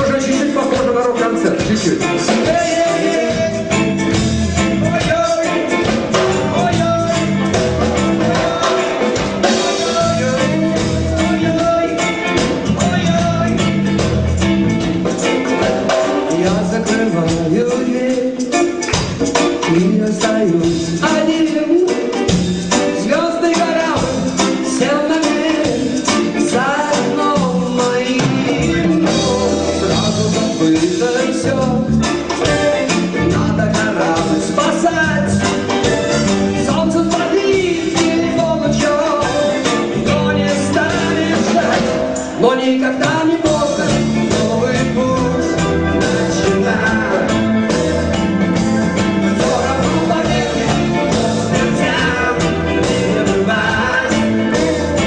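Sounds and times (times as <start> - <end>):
bass line: 0.0 - 55.0
live rock band playing: 0.0 - 55.0
steady drum beat: 0.0 - 55.0.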